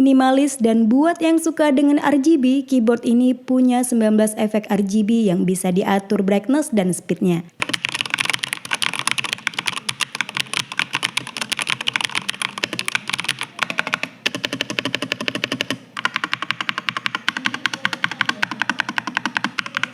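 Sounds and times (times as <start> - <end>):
mechanical keyboard typing: 7.6 - 19.9.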